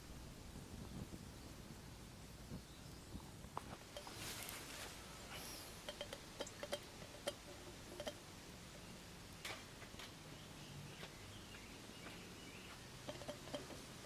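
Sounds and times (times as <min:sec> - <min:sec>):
wood fire crackling and popping: 0:05.7 - 0:08.4.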